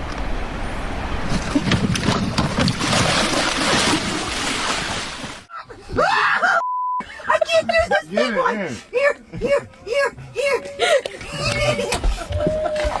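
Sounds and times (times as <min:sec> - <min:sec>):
rushing water: 0:00.0 - 0:05.5.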